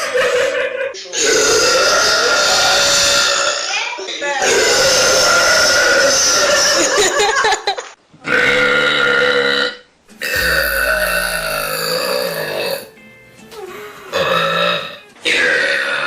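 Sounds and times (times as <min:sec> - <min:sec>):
girl burping: 0:01.2 - 0:06.9, 0:08.3 - 0:12.9, 0:13.5 - 0:16.0.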